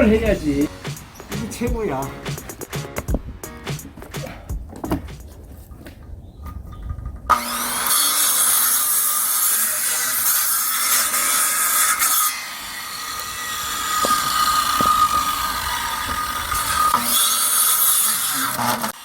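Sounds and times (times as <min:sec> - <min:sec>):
power saw cutting wood: 0:07.3 - 0:19.0.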